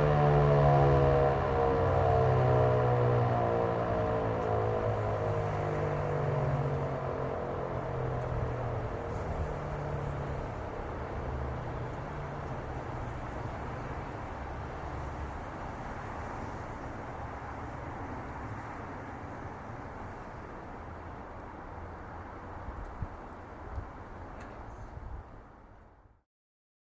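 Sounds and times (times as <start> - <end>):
fire siren winding down: 0.0 - 12.0.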